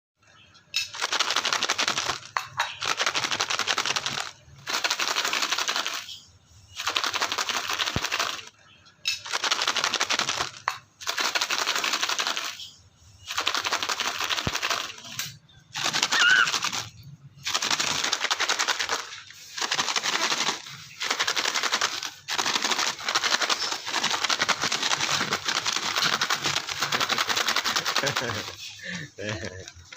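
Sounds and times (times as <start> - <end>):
plastic wrapper crinkling: 15.8 - 28.6.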